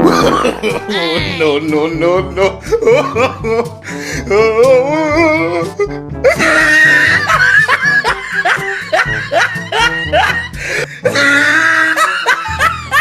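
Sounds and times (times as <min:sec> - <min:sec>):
laughter: 0:06.2 - 0:13.0.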